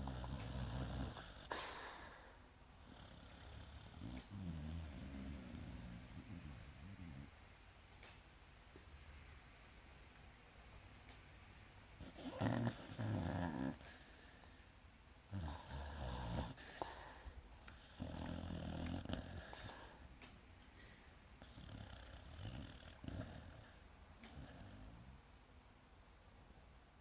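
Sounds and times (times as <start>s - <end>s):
dog snoring: 0.0s - 7.4s, 12.0s - 14.7s, 15.3s - 20.1s, 21.4s - 25.4s.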